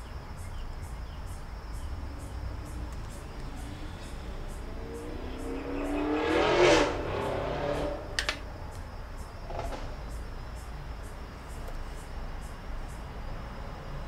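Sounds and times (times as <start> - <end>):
vehicle accelerating past: 1.8 - 8.4, 9.4 - 10.3
sharp clicks: 8.2 - 8.9.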